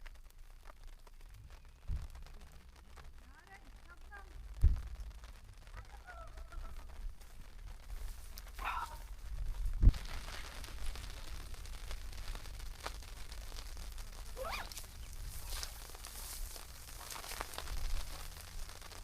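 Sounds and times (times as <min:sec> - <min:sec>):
raindrops tapping on a tarp: 0:00.0 - 0:19.0
low rumble: 0:04.3 - 0:19.0
dull thump: 0:04.6 - 0:04.9.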